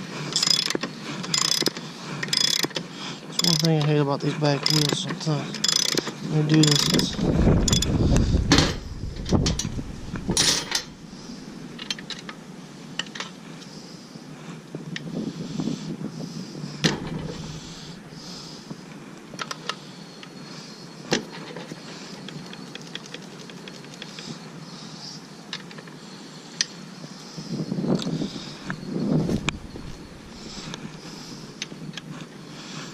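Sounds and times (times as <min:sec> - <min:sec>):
metal clicking and rattling: 0:00.3 - 0:11.0.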